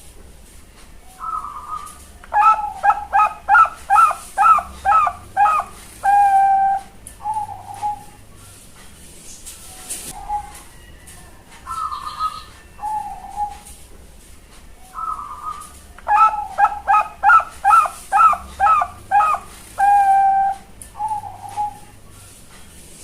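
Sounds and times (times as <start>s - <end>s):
dove cooing: 1.2s - 8.2s, 10.0s - 10.9s, 11.6s - 13.8s, 14.9s - 22.0s.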